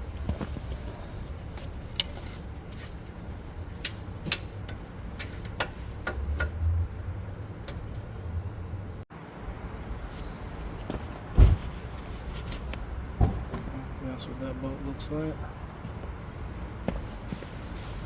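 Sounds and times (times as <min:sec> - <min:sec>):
brake parts and bolts clicking: 0:00.1 - 0:06.6, 0:07.4 - 0:08.1.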